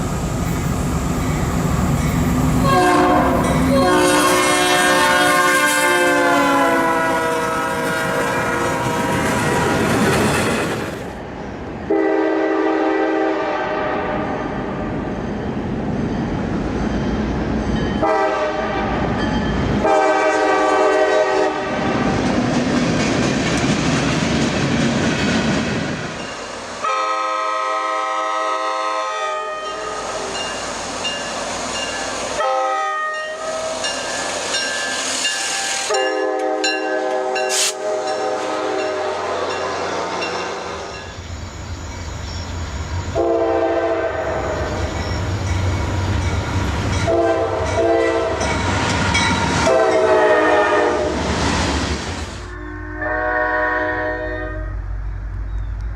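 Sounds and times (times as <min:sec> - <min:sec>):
passing train rumble: 0:00.0 - 0:55.9
locomotive air horn blasts: 0:02.6 - 0:09.9, 0:11.9 - 0:14.4, 0:18.0 - 0:19.1, 0:19.8 - 0:22.1, 0:26.8 - 0:30.0, 0:32.4 - 0:33.9, 0:35.7 - 0:40.8, 0:43.2 - 0:44.5, 0:47.1 - 0:48.4, 0:49.6 - 0:51.2, 0:52.4 - 0:54.8
wheels clacking over rail joints: 0:22.1 - 0:26.5.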